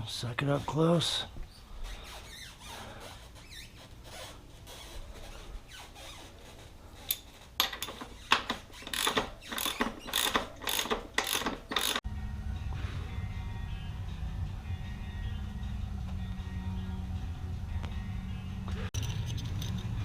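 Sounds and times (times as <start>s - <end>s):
ratchet wrench clicking: 8.9s - 12.0s.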